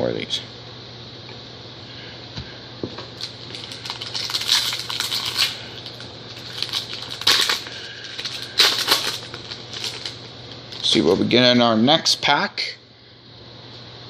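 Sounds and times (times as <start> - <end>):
cards and packaging rustling: 3.2 - 11.0.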